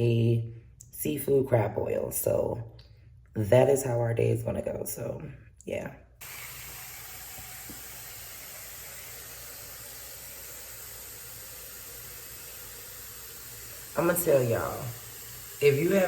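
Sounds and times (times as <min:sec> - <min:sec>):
tap water running: 0:06.2 - 0:16.0.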